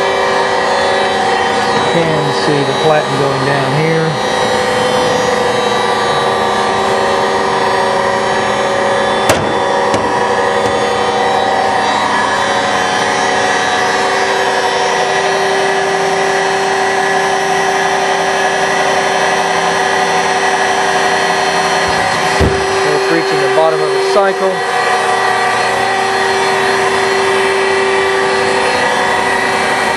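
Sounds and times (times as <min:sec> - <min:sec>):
baler motor running: 0:00.0 - 0:29.9
sharp knock: 0:09.3 - 0:10.8, 0:21.9 - 0:22.8.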